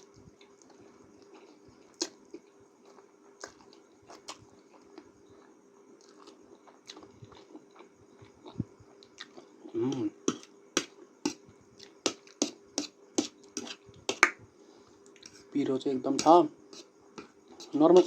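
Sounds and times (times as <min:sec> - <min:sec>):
person chewing noodles: 0:00.0 - 0:10.5
faint steady hum: 0:00.0 - 0:18.0.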